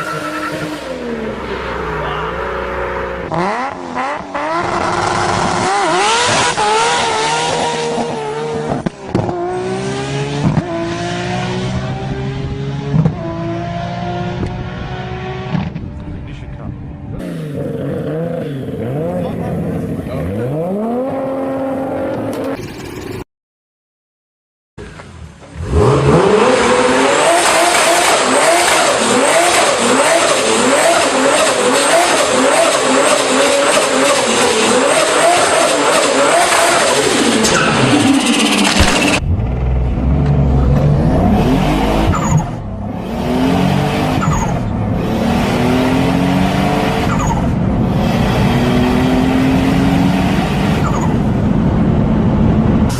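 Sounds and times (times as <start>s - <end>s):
car engine accelerating hard: 25.5s - 52.9s.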